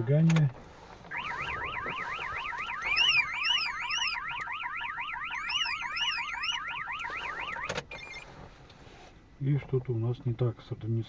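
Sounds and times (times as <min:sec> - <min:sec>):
car alarm siren warbling: 0:01.1 - 0:08.2.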